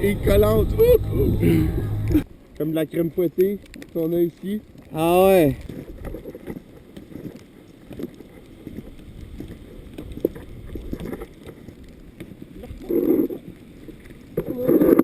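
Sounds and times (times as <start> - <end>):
wind buffeting microphone: 0.0 - 2.3.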